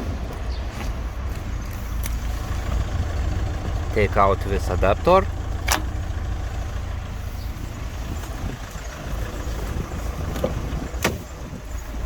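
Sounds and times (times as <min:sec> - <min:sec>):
low rumble: 0:01.0 - 0:12.0
adapter plug clicks: 0:05.6 - 0:05.9.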